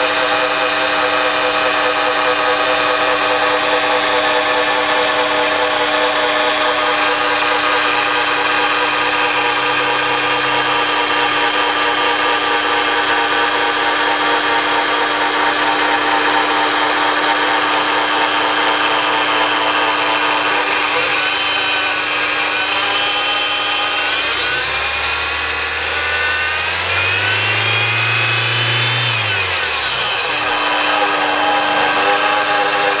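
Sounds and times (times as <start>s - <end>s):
car engine revving: 14.6s - 33.0s.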